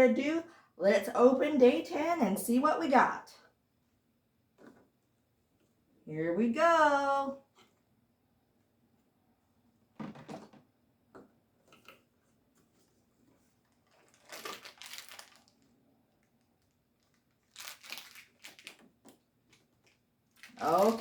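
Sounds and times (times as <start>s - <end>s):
packaging crinkling and tearing: 13.6s - 21.0s.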